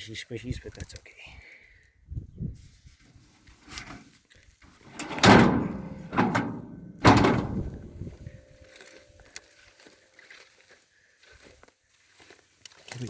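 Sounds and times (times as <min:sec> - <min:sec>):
truck door clunks and bangs: 0:04.8 - 0:08.0.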